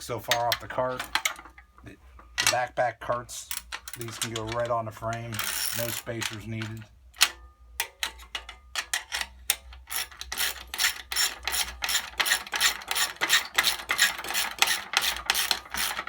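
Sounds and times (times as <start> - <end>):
ratchet wrench clicking: 3.5 - 8.2, 8.9 - 16.0.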